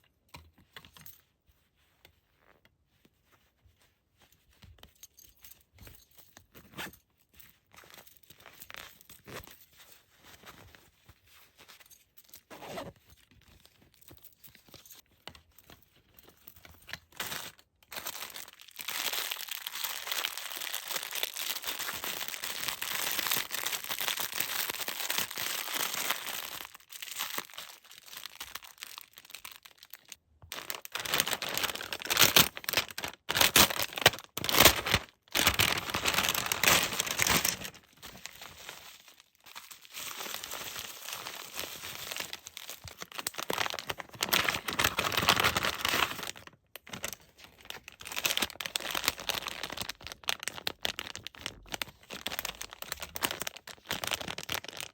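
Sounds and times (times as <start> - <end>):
packaging crinkling and tearing: 16.9 - 54.9.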